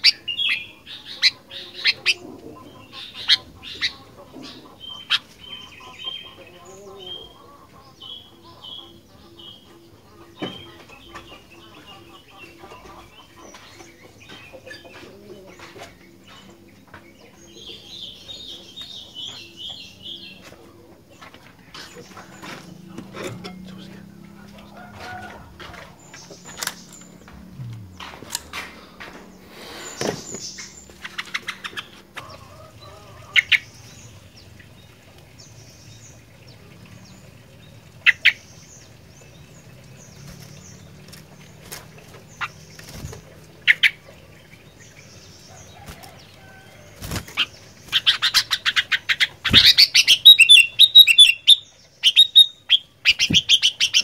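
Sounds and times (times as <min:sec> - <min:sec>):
bird chirping and chattering: 0:00.0 - 0:16.5, 0:26.0 - 0:33.7, 0:47.3 - 0:54.0
low steady hum: 0:21.7 - 0:38.0
bulbul calling: 0:47.3 - 0:54.0.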